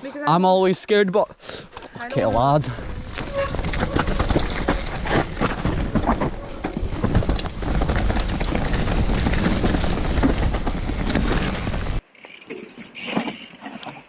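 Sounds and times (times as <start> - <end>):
bike clattering over roots and rocks: 2.8 - 12.0.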